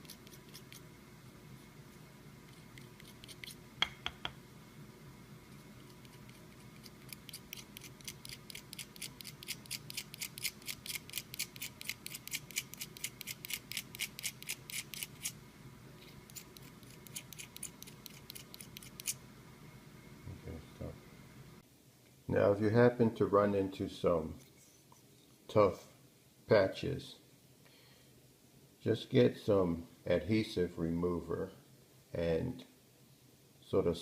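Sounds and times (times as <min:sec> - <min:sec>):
knife scraping ticks: 0:05.9 - 0:15.4, 0:16.3 - 0:19.2.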